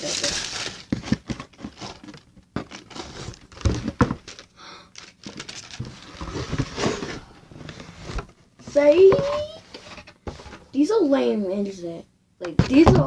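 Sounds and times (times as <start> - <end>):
rustling and knocking of objects: 0.0 - 10.8, 12.5 - 13.0
dull thumps: 12.5 - 13.0.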